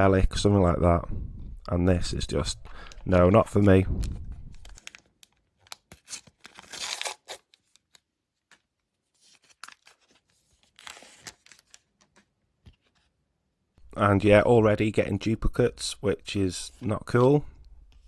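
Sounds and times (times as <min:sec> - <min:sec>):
wrapper tearing: 0:04.0 - 0:08.0.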